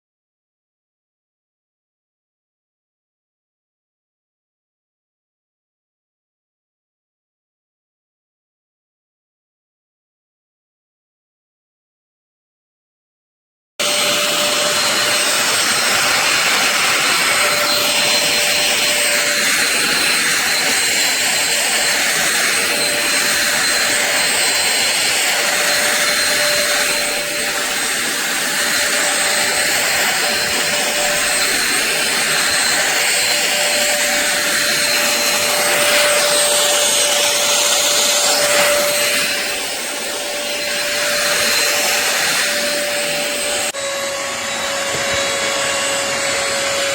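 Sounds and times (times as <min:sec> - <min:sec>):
stick vacuum cleaner running: 0:13.8 - 0:46.9.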